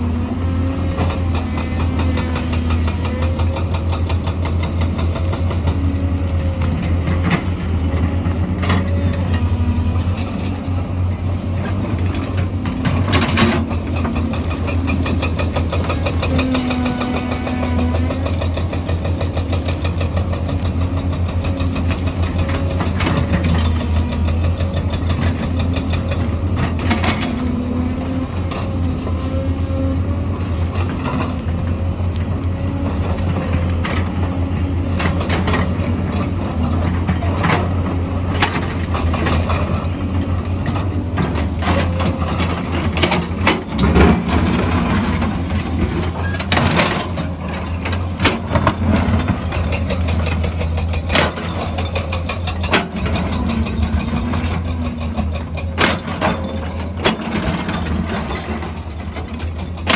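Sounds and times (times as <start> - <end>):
excavator diesel engine running: 0.0 - 59.9.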